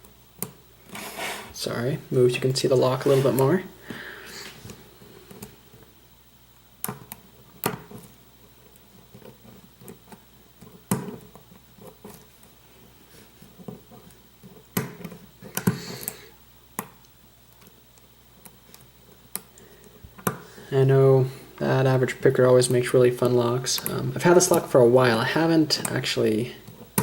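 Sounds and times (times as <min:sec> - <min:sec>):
faint scraping in a lock: 0:00.9 - 0:01.6.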